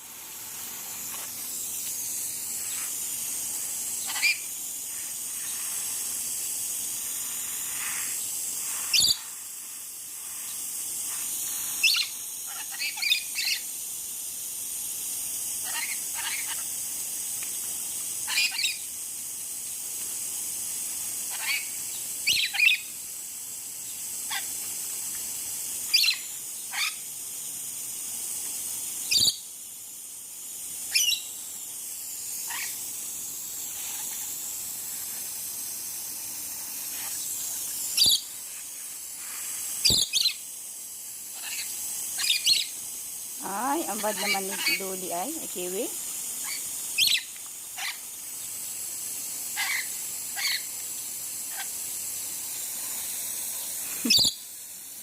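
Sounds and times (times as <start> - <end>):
spraying water hiss: 0.0 - 55.0
lorikeets screeching: 4.0 - 4.5, 32.5 - 32.8, 43.8 - 45.1, 49.6 - 50.7, 54.1 - 54.4.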